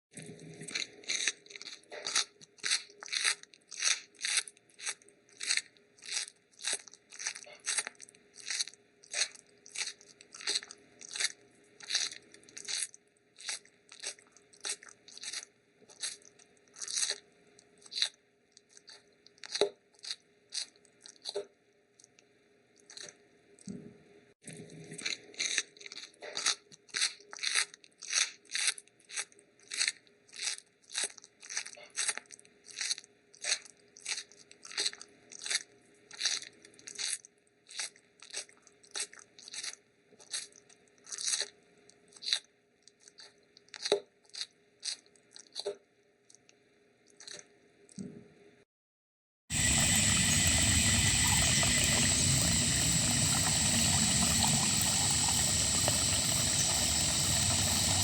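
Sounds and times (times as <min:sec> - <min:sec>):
kangaroo chewing grass: 0:49.6 - 0:58.0.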